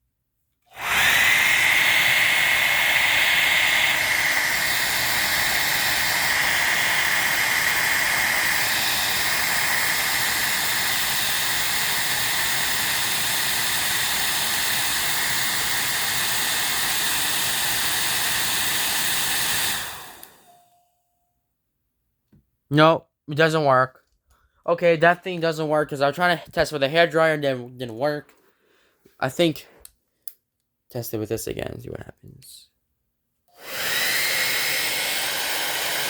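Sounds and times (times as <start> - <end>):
hairdryer running: 0.7 - 20.6, 33.6 - 36.0.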